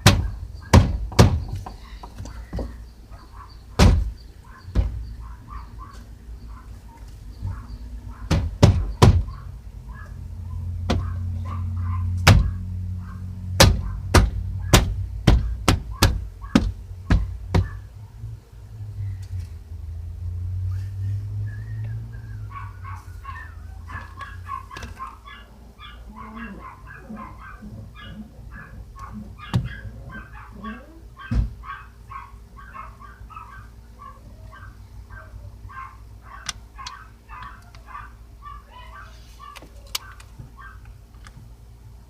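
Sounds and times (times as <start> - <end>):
hand knocking door panel: 0.0 - 1.8, 8.3 - 9.3, 13.6 - 17.8
dog whining and yipping: 21.6 - 39.9.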